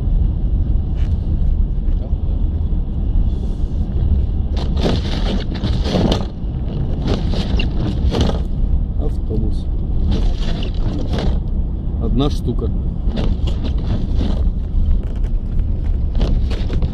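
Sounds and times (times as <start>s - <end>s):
car engine rumble inside cabin: 0.0s - 16.9s
road noise: 0.0s - 16.9s.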